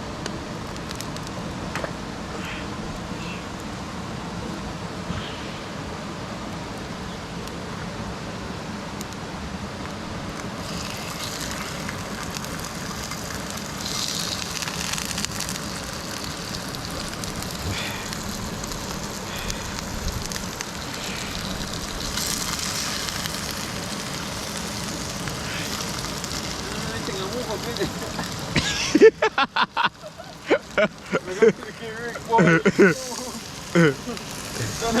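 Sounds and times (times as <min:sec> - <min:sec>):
rain falling: 0:00.0 - 0:35.0
food sizzling in hot oil: 0:10.3 - 0:35.0.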